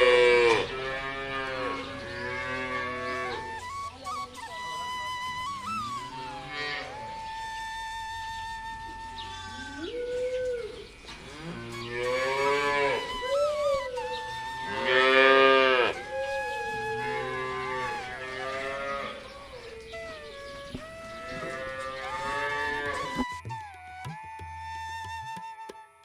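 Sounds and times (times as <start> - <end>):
cattle mooing: 0.0 - 3.5, 17.2 - 19.2.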